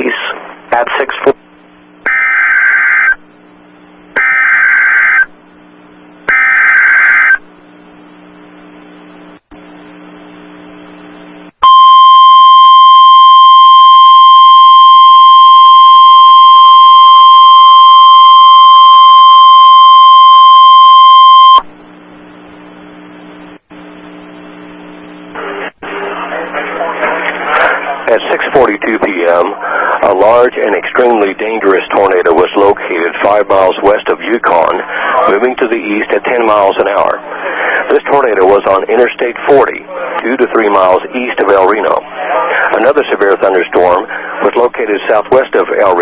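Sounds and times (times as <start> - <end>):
faint static: 0.0 - 46.0.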